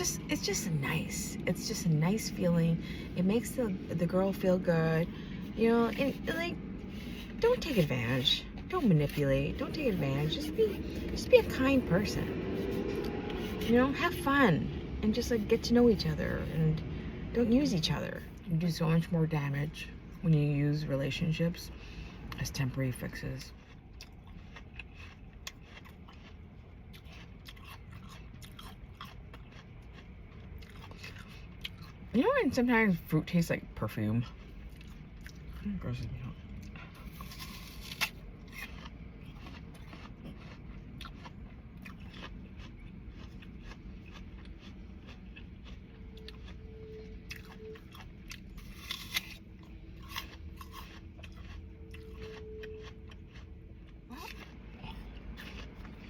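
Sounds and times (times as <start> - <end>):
low steady hum: 0.0 - 56.0
crunching apple: 23.4 - 32.0, 36.6 - 56.0.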